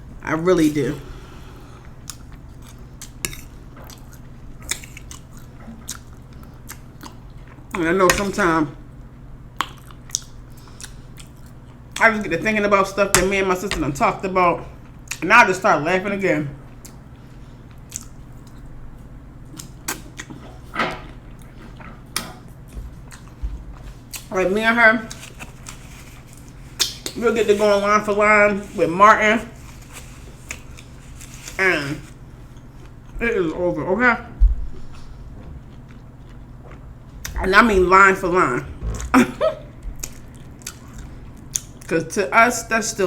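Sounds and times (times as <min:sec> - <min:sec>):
low steady hum: 0:00.0 - 0:43.0
person chewing food: 0:01.2 - 0:07.8, 0:09.6 - 0:12.0, 0:16.6 - 0:18.8, 0:19.4 - 0:24.4, 0:25.0 - 0:27.9, 0:29.5 - 0:33.2, 0:34.6 - 0:37.4, 0:38.8 - 0:41.9
mouth smacks and crunches: 0:02.0 - 0:07.7, 0:09.6 - 0:11.8, 0:17.7 - 0:18.7, 0:19.5 - 0:20.4, 0:25.0 - 0:27.2
wet mouth clicks and smacks: 0:09.6 - 0:11.5.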